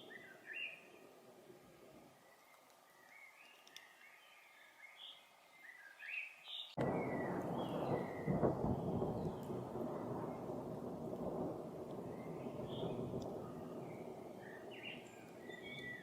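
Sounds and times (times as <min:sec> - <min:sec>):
songbird chirping: 0:00.0 - 0:16.0
thunder rumbling: 0:06.8 - 0:16.0.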